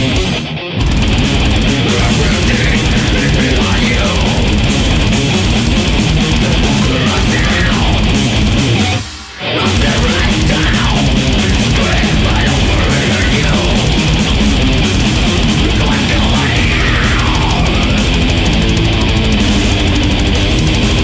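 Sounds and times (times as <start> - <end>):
death metal song: 0.0 - 21.0.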